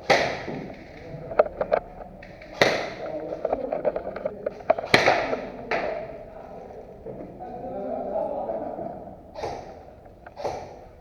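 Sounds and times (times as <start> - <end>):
airsoft gun shots: 0.0 - 0.7, 4.7 - 5.9
quiet rapid clicks: 0.1 - 7.0.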